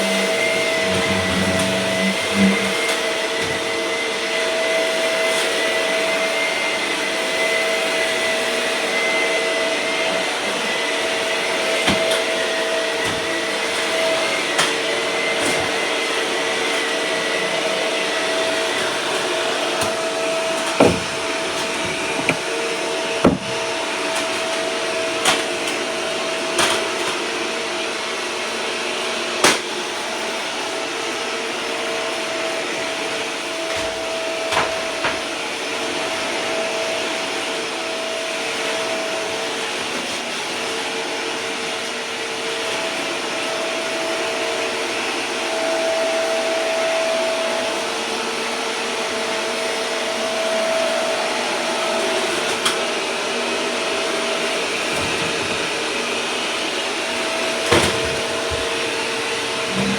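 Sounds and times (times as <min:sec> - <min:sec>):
vacuum cleaner running: 0:00.0 - 0:59.9
sharp knocks: 0:20.8 - 0:22.5, 0:23.2 - 0:23.6.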